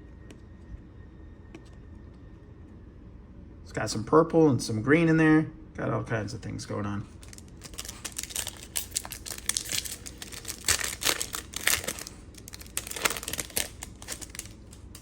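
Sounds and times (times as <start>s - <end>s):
trading card pack crinkling: 7.1s - 15.0s.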